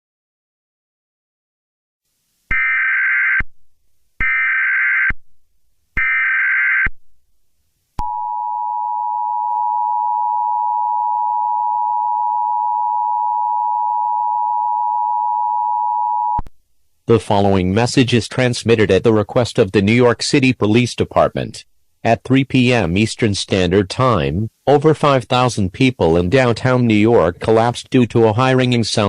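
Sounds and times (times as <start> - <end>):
steady two-tone attention signal: 8.0 - 16.4.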